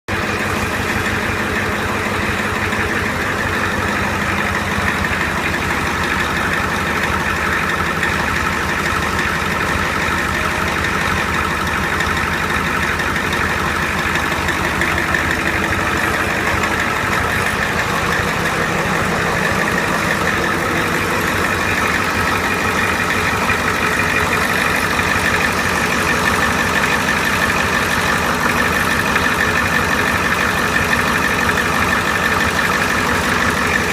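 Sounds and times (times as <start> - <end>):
vehicle engine idling: 0.0 - 33.9.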